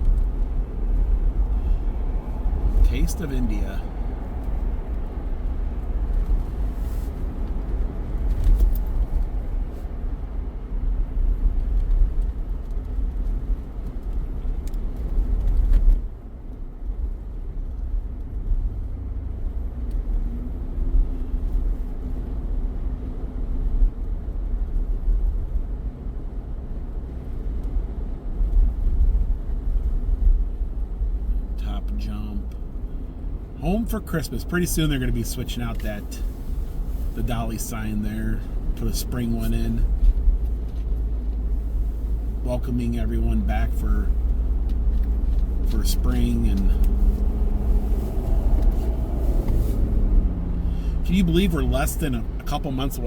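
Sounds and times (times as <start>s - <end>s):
engine and tyre road noise: 0.0s - 53.0s.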